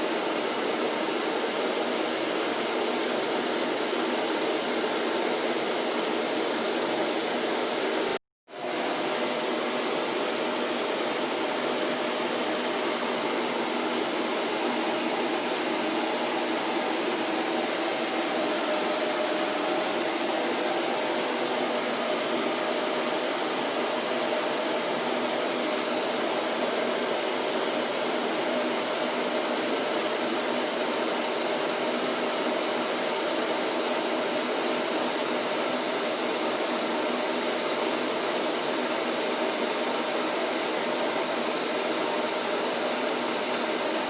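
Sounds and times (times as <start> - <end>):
vacuum cleaner motor running: 0.0 - 44.0.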